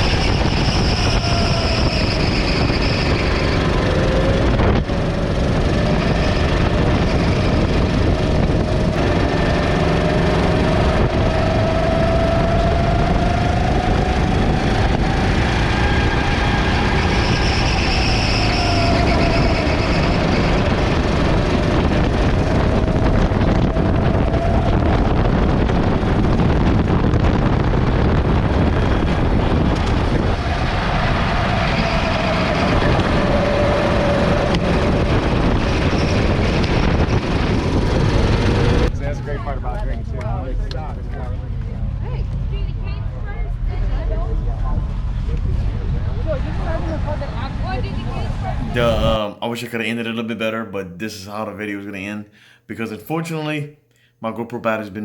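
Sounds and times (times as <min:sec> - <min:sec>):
vehicle engines running: 0:00.0 - 0:49.2.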